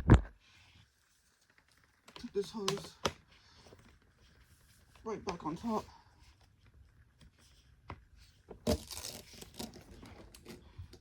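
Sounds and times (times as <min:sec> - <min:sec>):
rustling and scraping: 0:05.6 - 0:11.0.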